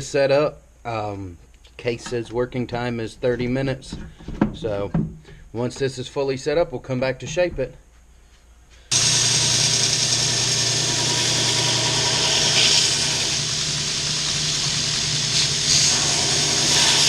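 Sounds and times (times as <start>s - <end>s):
power tool motor hum and hiss: 8.9s - 17.0s.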